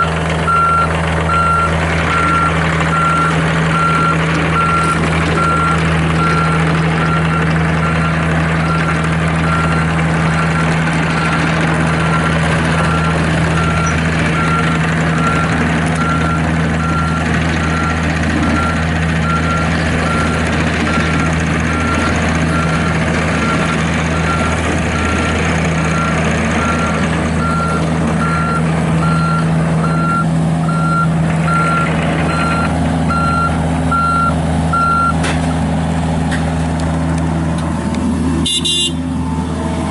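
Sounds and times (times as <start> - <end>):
excavator diesel engine running: 0.0 - 39.9
travel alarm beeping: 26.0 - 35.2.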